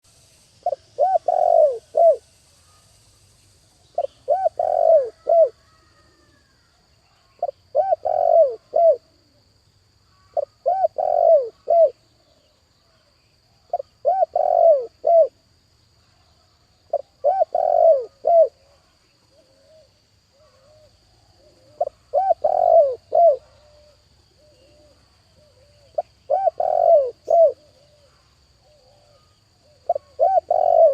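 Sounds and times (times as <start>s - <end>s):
dove cooing: 0.6s - 2.3s, 4.0s - 6.7s, 7.3s - 9.4s, 10.2s - 12.0s, 13.7s - 15.4s, 16.9s - 30.9s.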